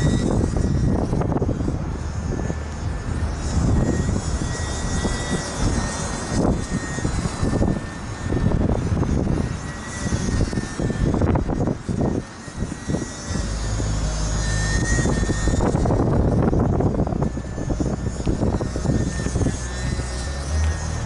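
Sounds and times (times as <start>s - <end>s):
model plane motor whine: 0.0s - 21.0s
wind buffeting microphone: 0.0s - 21.0s.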